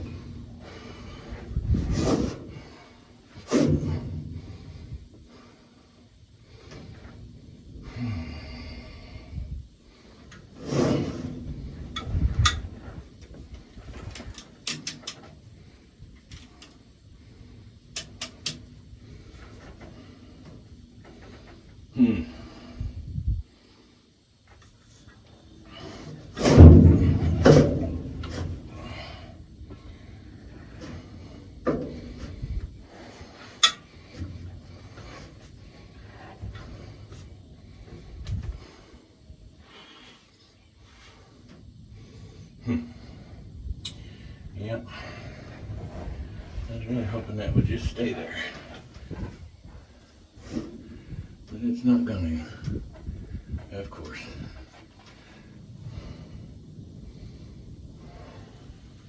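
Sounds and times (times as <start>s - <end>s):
scraping and rubbing on metal: 9.9s - 13.1s.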